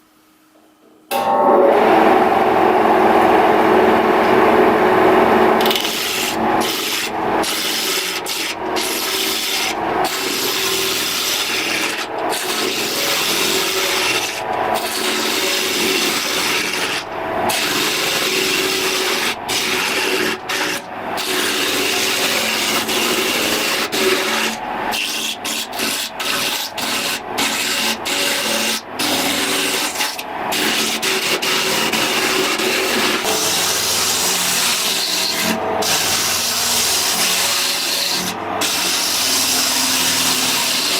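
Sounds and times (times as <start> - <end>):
power tool cutting wood: 1.1 - 40.9.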